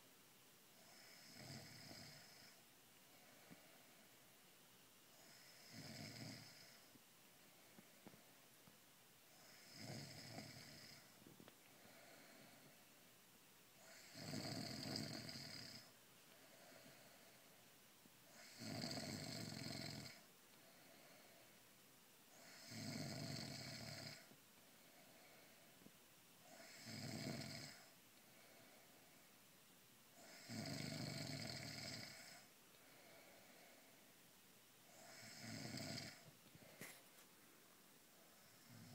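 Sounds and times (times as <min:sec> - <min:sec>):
woman snoring: 0:00.8 - 0:03.9, 0:05.1 - 0:06.9, 0:09.3 - 0:11.1, 0:13.8 - 0:17.4, 0:18.3 - 0:21.4, 0:22.4 - 0:25.6, 0:26.4 - 0:28.9, 0:30.2 - 0:34.0, 0:34.9 - 0:36.9, 0:38.2 - 0:38.9.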